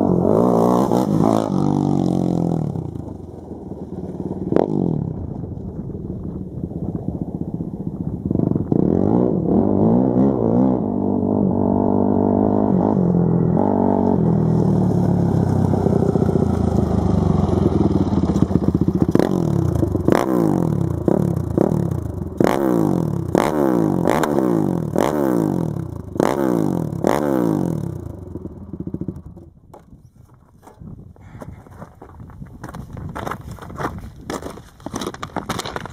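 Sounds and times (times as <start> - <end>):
quad engine revving: 0.0 - 5.2, 8.2 - 29.5.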